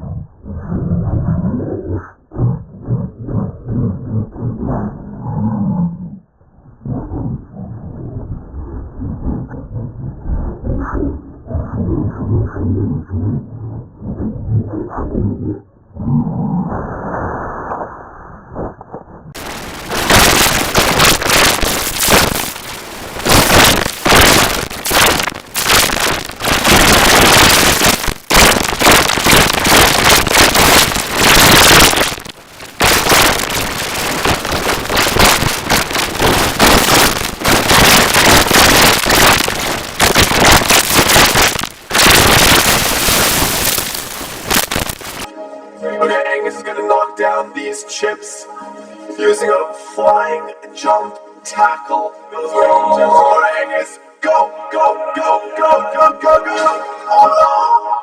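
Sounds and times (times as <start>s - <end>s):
harsh distorted crackling noise: 0.0s - 5.0s, 6.8s - 45.3s.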